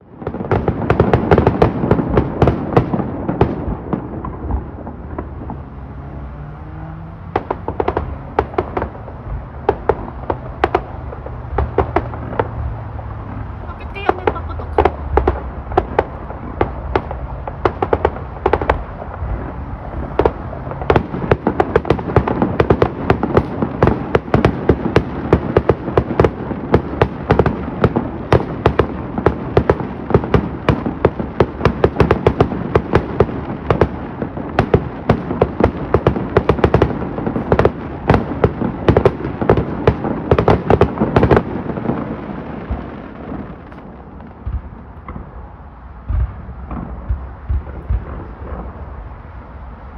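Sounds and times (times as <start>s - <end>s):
fireworks bangs and crackles: 0.0s - 49.9s
steady rumble: 42.6s - 49.9s.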